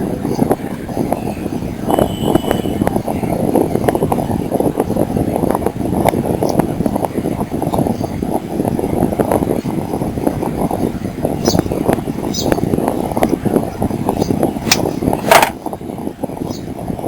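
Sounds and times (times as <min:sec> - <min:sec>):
vehicle rumble: 0:00.0 - 0:17.0
wind on microphone: 0:00.0 - 0:17.0
knocks and rattles: 0:14.1 - 0:15.7.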